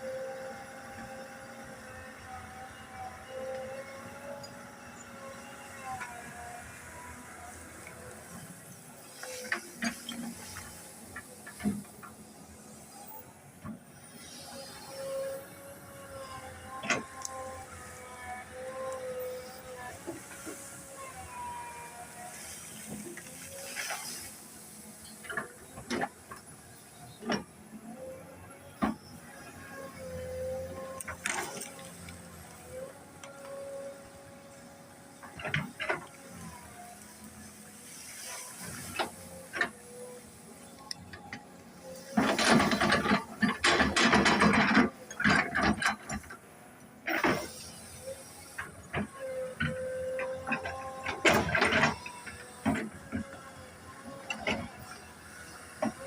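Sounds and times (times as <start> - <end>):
excavator machine tone: 0.0 - 56.0.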